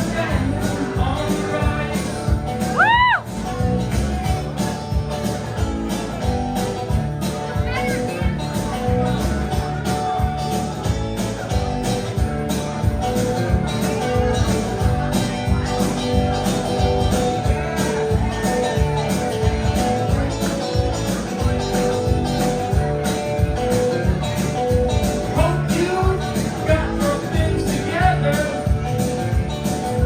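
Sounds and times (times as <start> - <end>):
person singing: 0.0 - 3.2, 25.3 - 29.0
guitar rock country song: 0.0 - 30.0.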